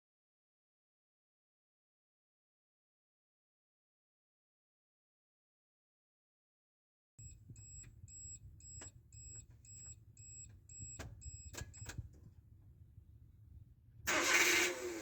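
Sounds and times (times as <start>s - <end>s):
electronic warning beeps: 7.2s - 12.2s
sharp clicks: 7.2s - 12.2s.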